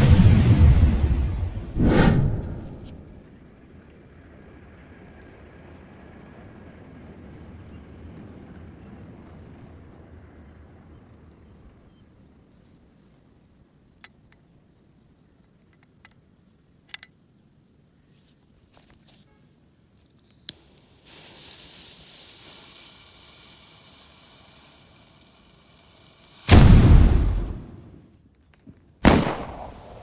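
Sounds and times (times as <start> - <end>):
fuse burning with hiss: 20.3 - 28.0.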